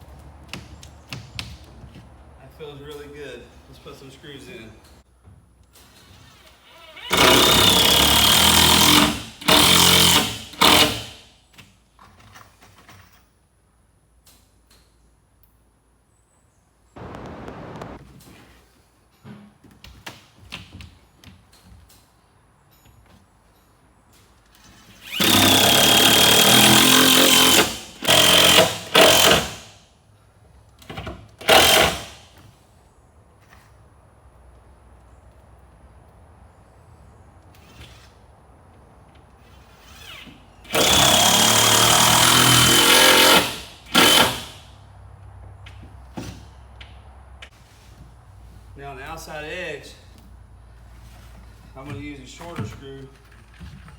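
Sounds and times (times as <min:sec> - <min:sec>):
power screwdriver driving screws: 0:06.2 - 0:11.1, 0:24.9 - 0:29.7, 0:31.4 - 0:32.2, 0:39.5 - 0:44.6.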